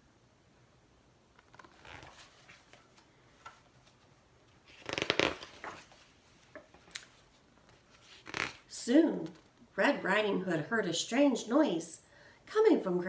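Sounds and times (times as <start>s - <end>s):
book pages rustling: 1.3s - 9.6s.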